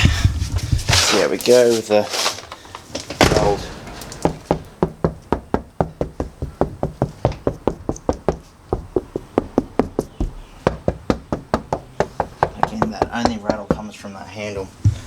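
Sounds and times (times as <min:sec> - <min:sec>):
rapid knocking on car door: 0:04.3 - 0:14.0.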